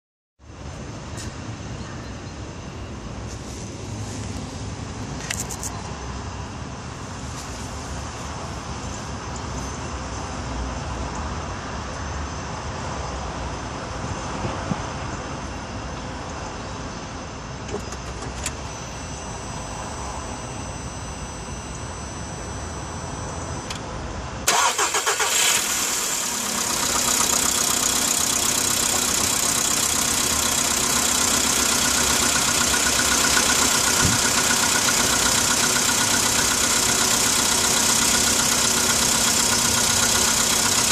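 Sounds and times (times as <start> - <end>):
car engine cold idle with knock: 17.7 - 18.6, 24.5 - 40.9
thin high tone: 18.4 - 24.3.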